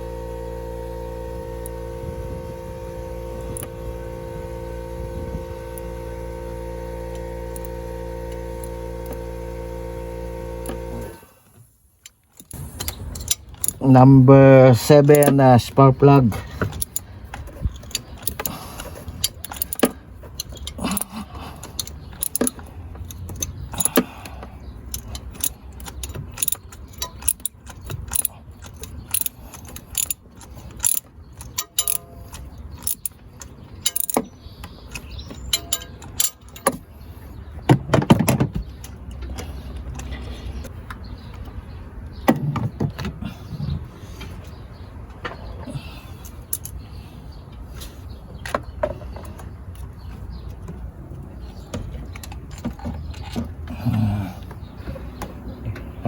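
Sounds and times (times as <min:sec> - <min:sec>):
low steady hum: 0:00.0 - 0:11.9
ratchet and socket clicking: 0:03.3 - 0:03.8, 0:07.1 - 0:09.3, 0:12.0 - 0:13.8, 0:16.6 - 0:36.8, 0:46.2 - 0:46.8
metal tools clinking: 0:12.0 - 0:37.2, 0:45.8 - 0:46.9.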